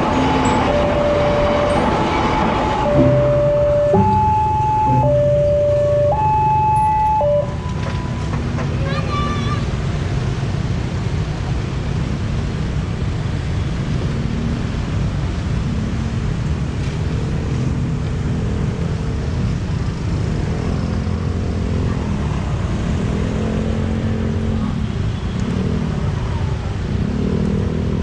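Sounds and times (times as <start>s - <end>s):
heavy vehicle rumble: 0.0s - 28.0s
musical horn note: 0.1s - 6.3s.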